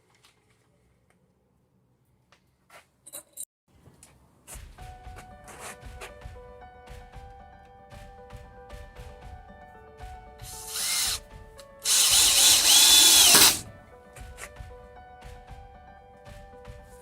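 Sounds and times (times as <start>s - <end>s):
background music: 4.5s - 17.0s
cordless drill motor whine: 10.5s - 11.2s, 11.8s - 13.7s.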